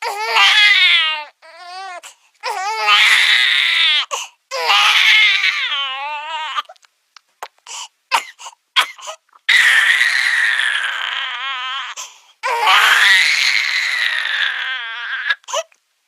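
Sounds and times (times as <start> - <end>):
cartoon baby wailing: 9.5 - 15.4.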